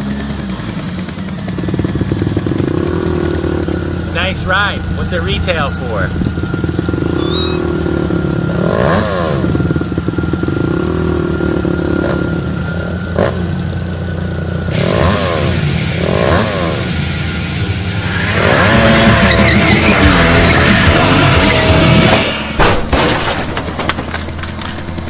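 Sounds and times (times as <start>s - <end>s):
engine revving: 0.0s - 22.6s.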